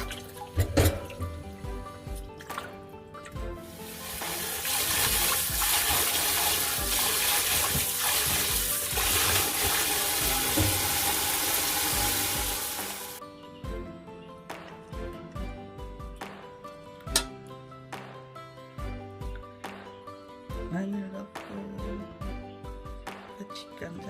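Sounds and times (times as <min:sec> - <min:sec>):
tap water running into sink: 0:03.3 - 0:13.2.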